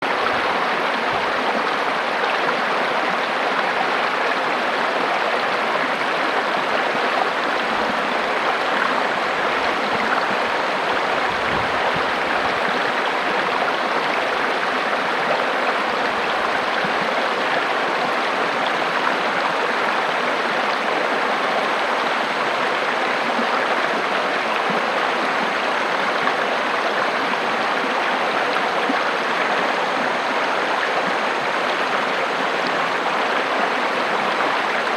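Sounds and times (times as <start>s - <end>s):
river water rushing over rocks: 0.0s - 34.9s.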